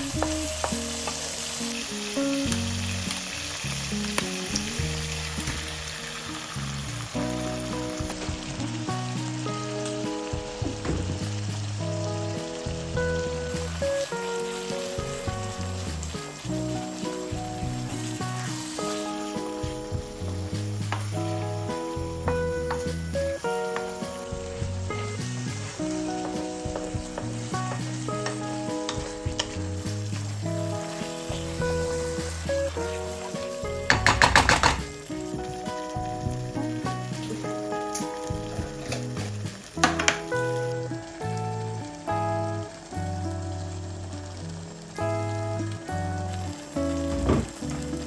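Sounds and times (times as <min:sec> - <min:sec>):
background music with held notes: 0:00.0 - 0:48.0
food sizzling in a pan: 0:00.0 - 0:48.0
utensil clicking against pan: 0:33.6 - 0:35.0.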